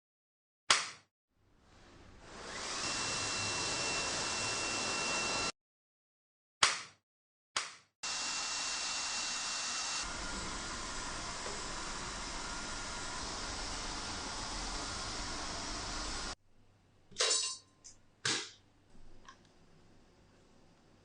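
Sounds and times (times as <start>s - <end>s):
handheld vacuum cleaner whine: 2.3s - 5.5s, 8.0s - 16.4s.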